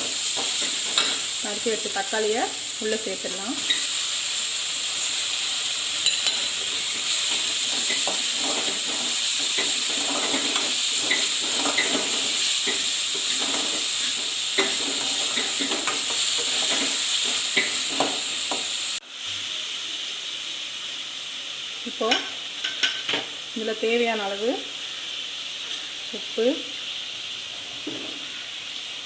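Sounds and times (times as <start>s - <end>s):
vegetables sizzling in hot oil: 0.0s - 29.0s
spatula scraping a pan: 6.1s - 18.7s.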